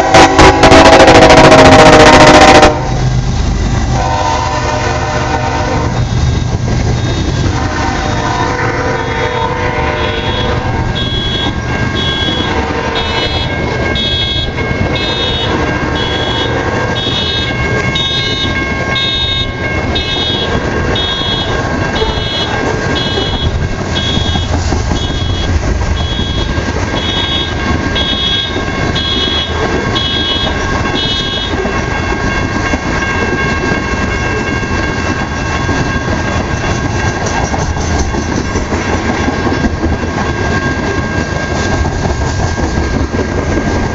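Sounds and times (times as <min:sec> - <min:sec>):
locomotive horn: 0:00.0 - 0:03.2, 0:03.8 - 0:34.6
train cars rumbling and clattering: 0:00.0 - 0:43.9
car alarm electronic tone: 0:10.1 - 0:31.5.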